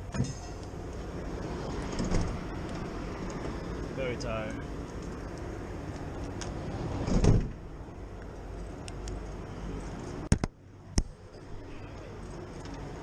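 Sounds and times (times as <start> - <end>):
vehicle door thump: 7.0 - 7.6.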